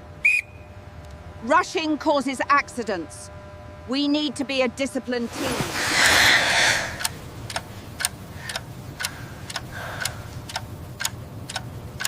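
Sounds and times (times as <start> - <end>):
clock ticking: 7.0 - 12.0.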